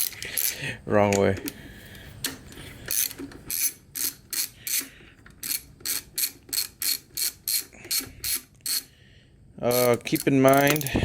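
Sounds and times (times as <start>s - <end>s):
hand ratchet clicking: 2.2s - 8.9s, 9.7s - 11.0s.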